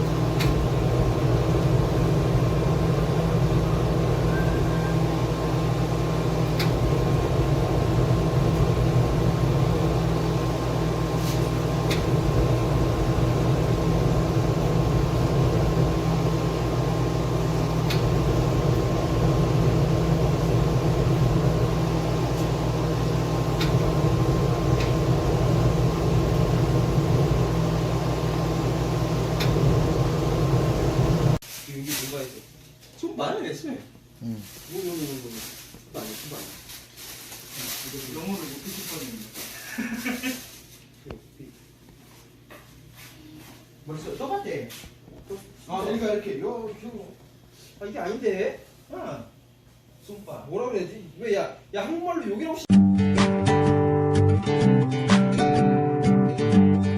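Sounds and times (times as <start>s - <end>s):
steady machine hum: 0.0s - 31.4s.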